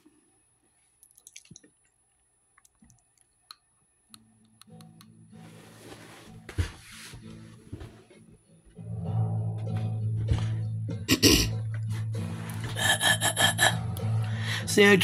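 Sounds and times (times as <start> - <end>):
rustling handling noise: 5.4 - 8.4.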